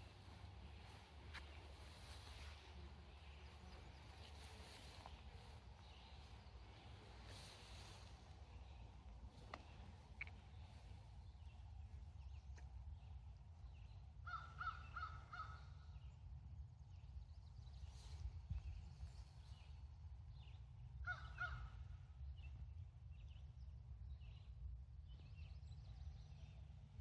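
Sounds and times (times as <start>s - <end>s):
low background rumble: 0.0s - 27.0s
crow cawing: 14.3s - 15.6s.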